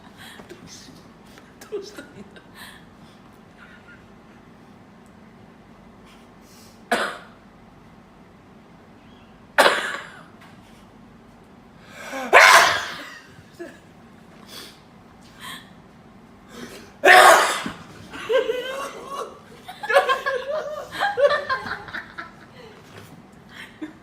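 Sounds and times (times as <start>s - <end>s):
breaths: 0.1s - 0.5s, 11.8s - 12.3s, 14.4s - 15.8s, 16.4s - 17.0s
person sneezing: 12.0s - 13.3s, 16.6s - 17.9s.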